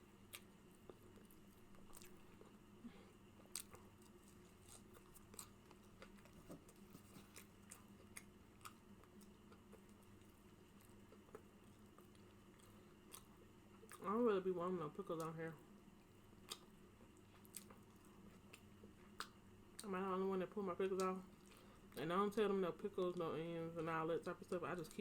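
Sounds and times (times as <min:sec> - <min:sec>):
steady low hum: 0:00.0 - 0:25.0
person chewing: 0:00.2 - 0:14.0, 0:16.0 - 0:19.9.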